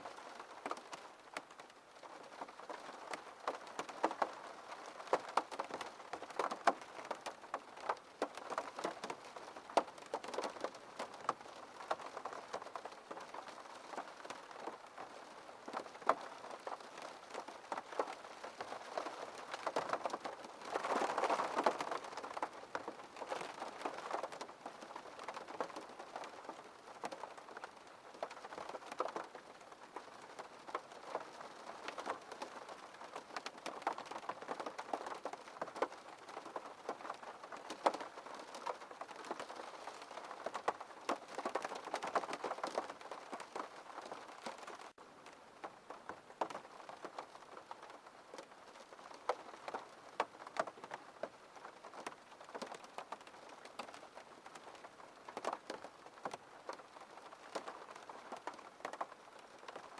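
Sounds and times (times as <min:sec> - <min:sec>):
steady wash of rain: 0:00.0 - 0:59.9
raindrops tapping on glass: 0:02.3 - 0:45.0.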